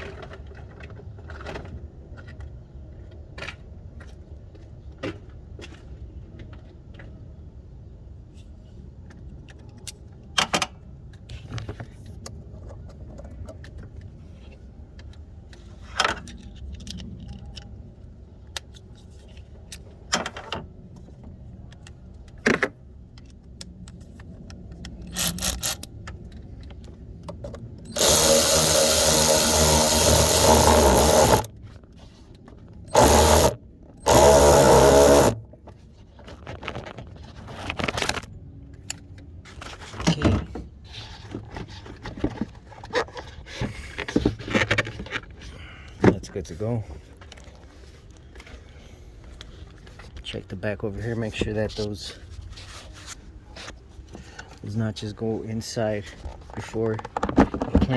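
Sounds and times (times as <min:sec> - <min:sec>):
power drill running: 0:25.1 - 0:25.9, 0:27.9 - 0:31.5, 0:32.9 - 0:35.4.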